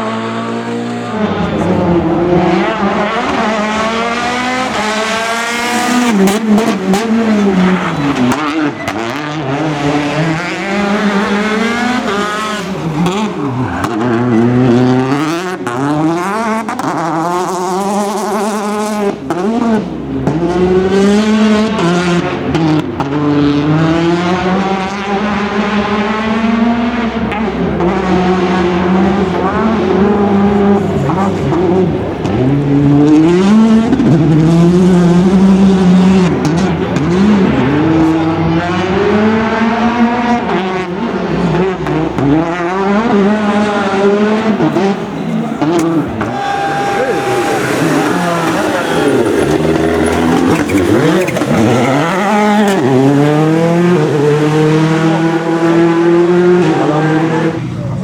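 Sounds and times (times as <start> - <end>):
rally car engines revving: 0.0 - 58.0
tire squeal: 0.6 - 15.5, 43.3 - 54.6.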